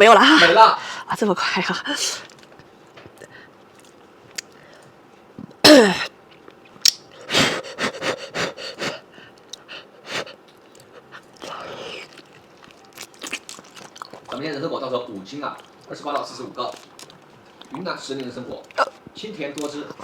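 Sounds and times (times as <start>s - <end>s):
wet chewing smacks: 10.4s - 14.5s, 15.5s - 20.0s.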